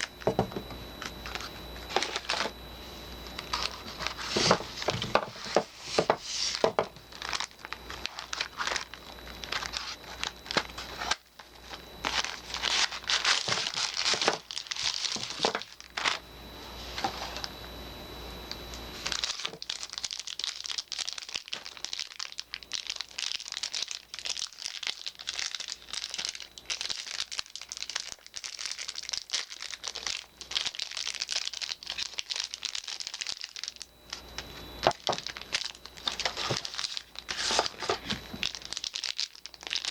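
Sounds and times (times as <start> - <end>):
wrapping crinkling: 0.0 - 0.4, 1.0 - 2.6, 3.2 - 16.2, 19.0 - 39.9
wrapping tearing: 1.2 - 2.5, 3.4 - 16.2, 19.0 - 39.9.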